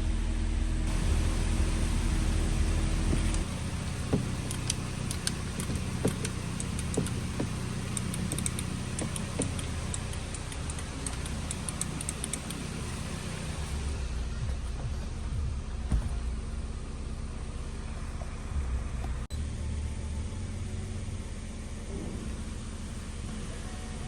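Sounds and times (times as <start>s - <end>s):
low mechanical hum: 0.0s - 24.0s
light clicks and ticks: 4.1s - 12.6s.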